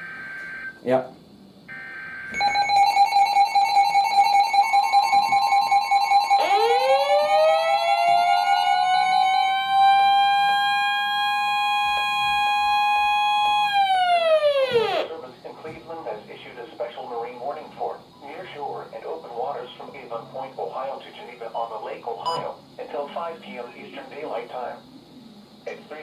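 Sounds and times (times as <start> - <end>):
warbling siren: 1.7 - 15.1.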